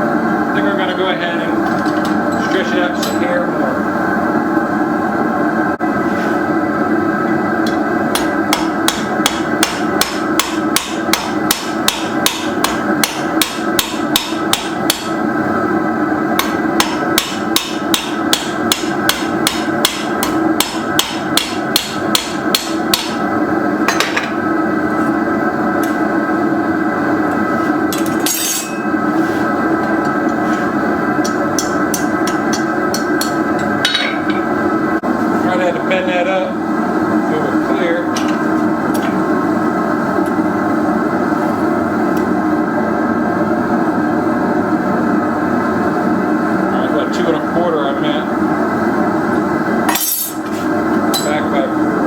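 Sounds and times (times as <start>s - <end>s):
steady background noise: 0.0s - 52.0s
hammer striking steel on anvil: 8.2s - 15.1s, 16.4s - 23.2s, 28.0s - 28.9s, 31.2s - 34.5s, 49.9s - 50.4s, 51.2s - 51.4s.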